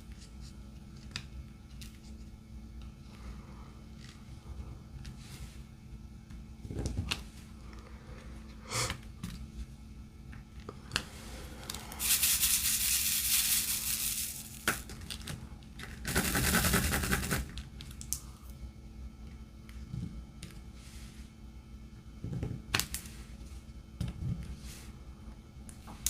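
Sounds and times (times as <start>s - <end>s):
beads rattling in plastic tray: 12.0s - 14.8s.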